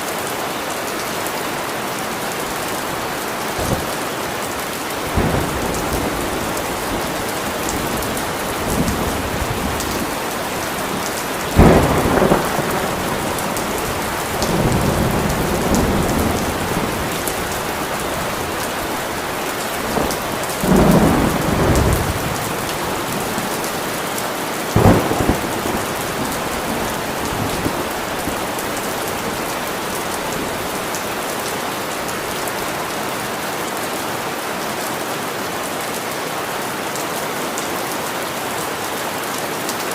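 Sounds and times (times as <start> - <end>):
steady rain: 0.0 - 39.9
thunder rolling rumbles: 2.5 - 23.7, 24.8 - 31.3
thunder cracking: 2.5 - 23.8, 24.8 - 31.0.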